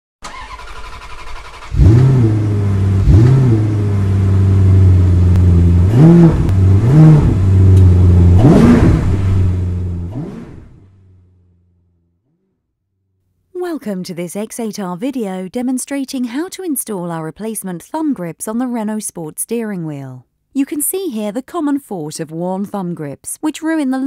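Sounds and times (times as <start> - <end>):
car engine revving: 0.2 - 12.6.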